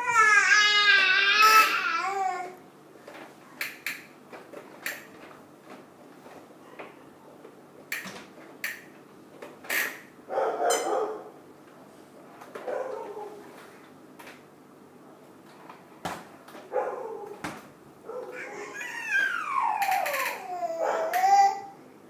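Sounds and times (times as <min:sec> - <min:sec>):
plastic toys clicking and knocking: 0:19.8 - 0:20.5.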